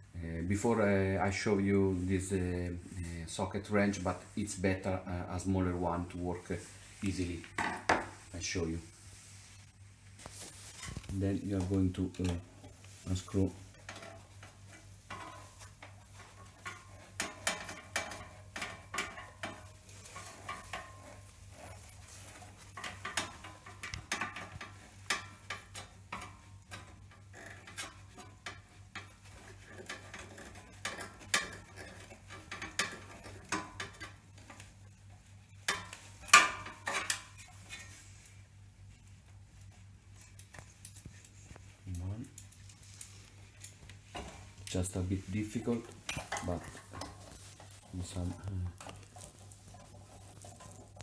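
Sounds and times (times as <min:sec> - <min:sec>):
metal clatter: 0:10.7 - 0:35.0, 0:35.6 - 0:38.0, 0:42.3 - 0:51.0.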